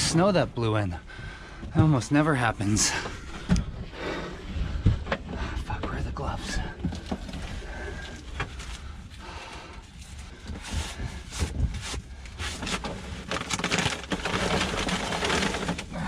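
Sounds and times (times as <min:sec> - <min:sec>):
rustling: 0:06.3 - 0:16.0.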